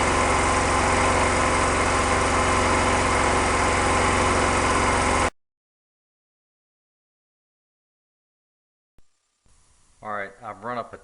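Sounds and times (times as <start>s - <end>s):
compressor running: 0.0s - 5.3s.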